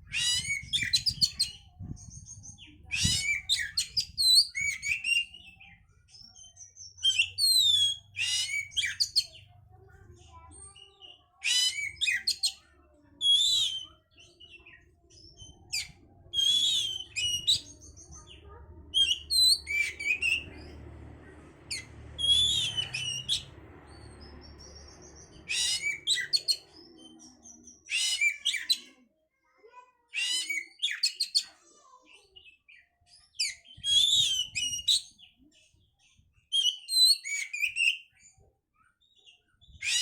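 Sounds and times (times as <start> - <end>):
magpie-robin singing: 0.0 - 21.0, 21.6 - 29.0, 30.1 - 38.4, 39.0 - 40.0
faint low hum: 17.1 - 25.9.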